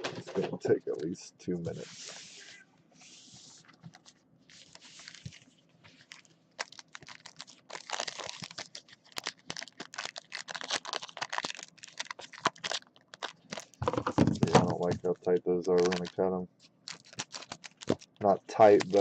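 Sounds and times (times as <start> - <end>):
plastic wrappers crinkling and tearing: 3.9 - 15.0, 15.7 - 19.0.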